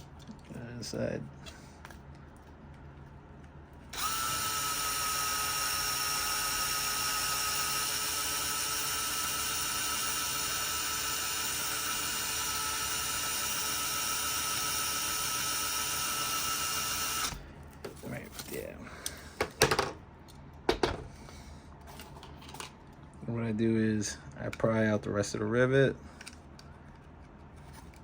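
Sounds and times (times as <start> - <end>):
electric drill high whine: 3.9 - 17.4.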